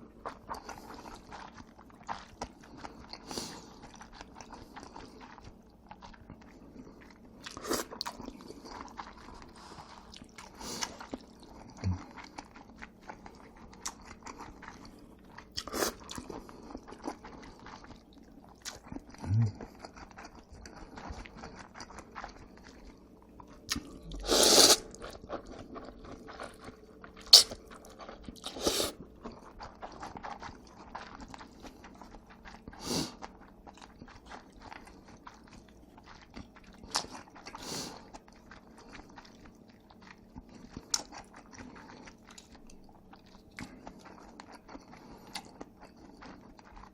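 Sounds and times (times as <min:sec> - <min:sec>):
chewing noodles: 0:00.0 - 0:46.9
wet mouth clicks: 0:27.2 - 0:27.6.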